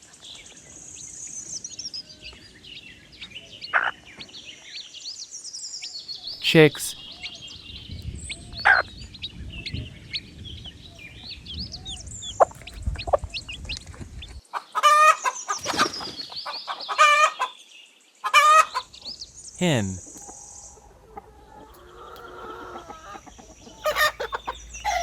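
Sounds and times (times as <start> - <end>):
chicken clucking calls: 14.8 - 15.4, 18.2 - 18.8, 20.8 - 25.0
chicks peeping: 21.2 - 25.0.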